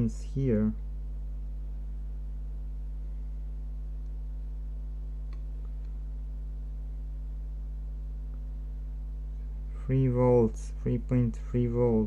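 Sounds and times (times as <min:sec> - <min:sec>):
electrical mains hum: 0:00.0 - 0:12.0.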